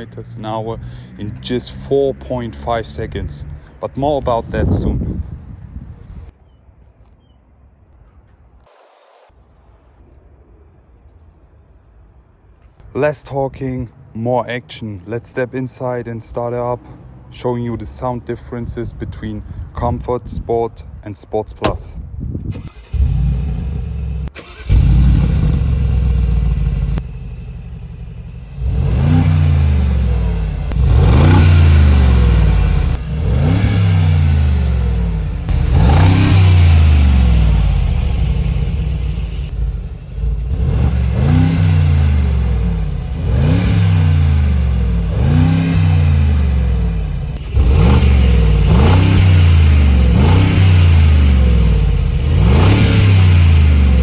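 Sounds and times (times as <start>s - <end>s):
car engine starting and revving: 0.0s - 4.8s, 22.5s - 54.0s.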